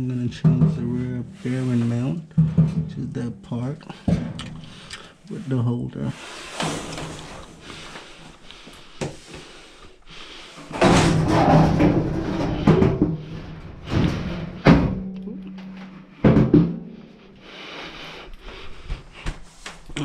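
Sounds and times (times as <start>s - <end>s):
dryer parts knocking and clattering: 0.0s - 4.9s, 6.5s - 8.2s, 10.6s - 17.2s
rattling: 10.6s - 17.2s.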